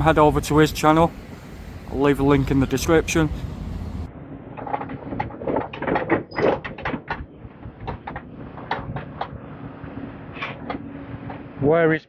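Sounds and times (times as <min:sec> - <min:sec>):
faint engine hum: 0:00.0 - 0:05.3.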